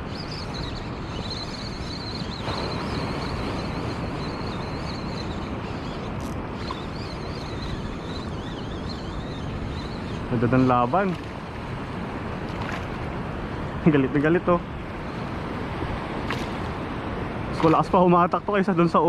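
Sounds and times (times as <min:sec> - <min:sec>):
faint high whine: 0:00.0 - 0:11.3
surf washing on shore: 0:00.0 - 0:19.0
wind on microphone: 0:00.0 - 0:19.0.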